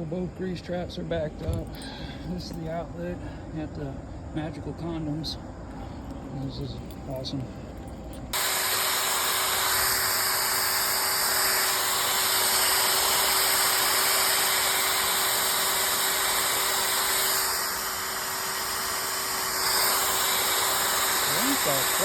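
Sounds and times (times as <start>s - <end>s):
faint steady hum: 0.0s - 22.0s
drain-cleaning machine hissing: 8.4s - 22.0s.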